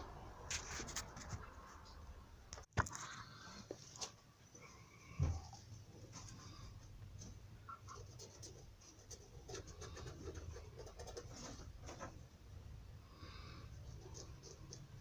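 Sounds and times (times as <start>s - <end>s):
faint scratching and scraping: 0.4s - 2.1s, 2.8s - 12.4s, 13.1s - 15.0s.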